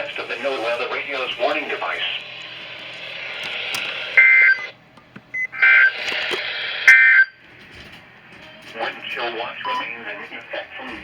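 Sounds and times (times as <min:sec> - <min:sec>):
radio hiss: 0:00.0 - 0:04.7, 0:08.8 - 0:11.0.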